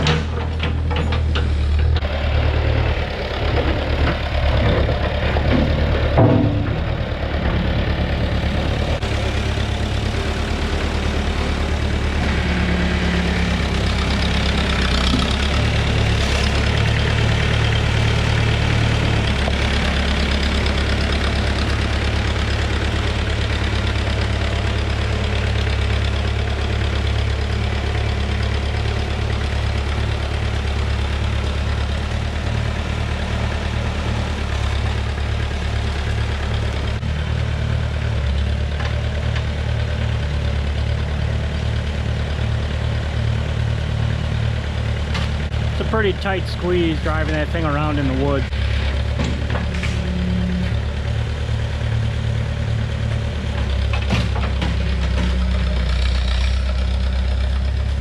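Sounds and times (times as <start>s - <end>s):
clunks: 0.0s - 2.1s, 3.4s - 9.1s, 47.2s - 50.9s, 53.4s - 56.6s
heavy equipment engine running: 0.0s - 58.0s.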